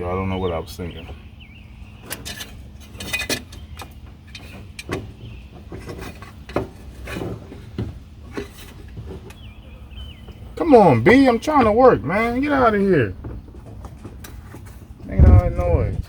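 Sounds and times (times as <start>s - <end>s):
faint steady hum: 0.0s - 16.0s
clicks and scrapes of handled parts: 2.0s - 5.0s, 5.7s - 9.4s.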